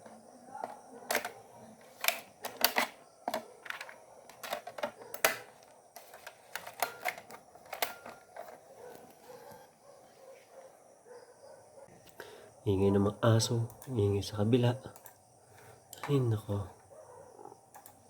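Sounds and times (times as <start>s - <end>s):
clicks and taps at a computer: 2.0s - 5.5s, 14.9s - 15.2s, 17.7s - 18.0s.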